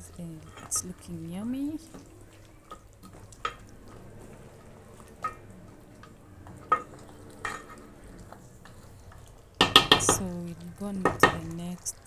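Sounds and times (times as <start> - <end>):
faint sizzle: 0.0 - 12.0
spoon stirring in a pot: 0.0 - 12.0
spoon clicking against pot: 9.6 - 10.3.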